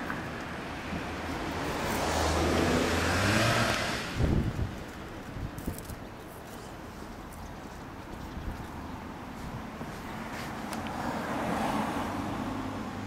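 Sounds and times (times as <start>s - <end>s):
vehicle engine accelerating past: 1.6s - 4.4s.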